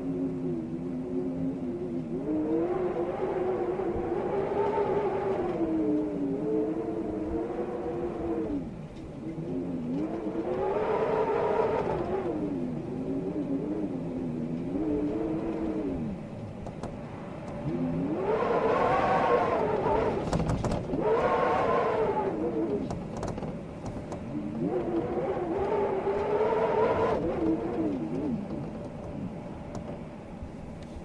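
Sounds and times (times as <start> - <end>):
storm wind howling: 0.0 - 31.0.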